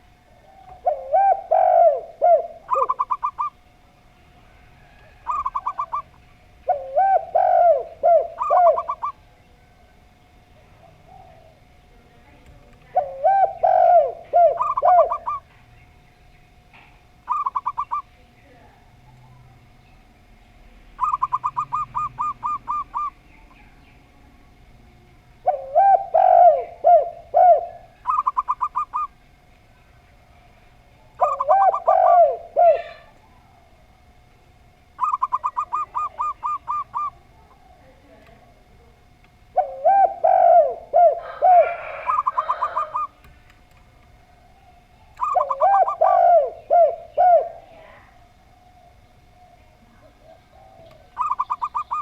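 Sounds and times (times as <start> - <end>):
dove short high cooing notes: 0.0 - 10.1, 10.7 - 12.0, 12.9 - 15.6, 17.2 - 18.1, 20.8 - 24.0, 25.4 - 30.0, 31.0 - 34.0, 34.9 - 38.0, 39.5 - 43.3, 44.2 - 52.0
dove slow low looping coos: 0.0 - 52.0.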